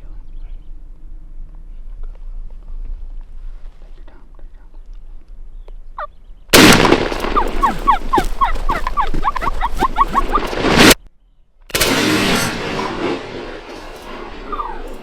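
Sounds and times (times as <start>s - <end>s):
shotgun blast: 6.5s - 11.0s, 11.7s - 15.0s
turkey gobbling: 6.6s - 11.0s, 14.5s - 15.0s
heavy noise: 11.7s - 15.0s.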